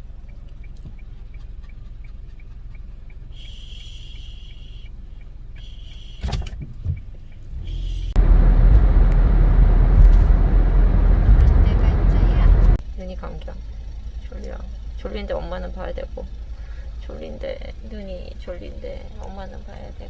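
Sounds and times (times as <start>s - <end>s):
light regular ticking: 0.0s - 7.5s
car engine hum: 0.0s - 20.0s
road and wind noise: 0.0s - 20.0s.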